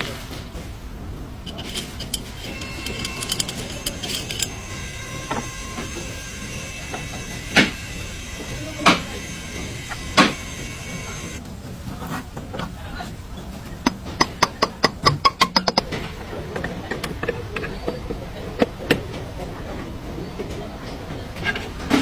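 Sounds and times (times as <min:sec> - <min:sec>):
fast ratchet clicks: 0:01.5 - 0:11.4.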